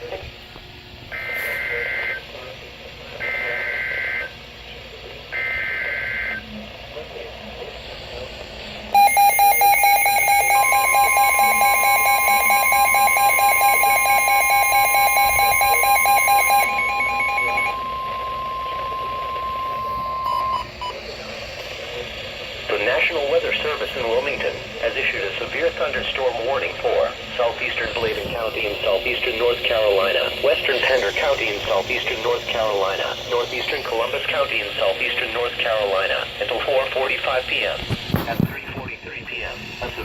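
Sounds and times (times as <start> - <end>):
steady alarm tone: 1.1 - 2.3, 3.2 - 4.4, 5.3 - 6.5, 8.9 - 21.0, 27.4 - 36.5
rapidly pulsing electronic beep: 8.9 - 21.0, 28.0 - 37.2
screeching data bursts: 9.0 - 20.8, 28.1 - 35.6.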